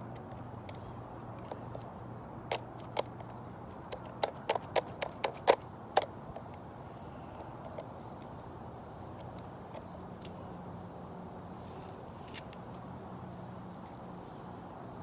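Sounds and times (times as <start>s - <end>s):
sharp plastic clicks: 2.5s - 6.6s.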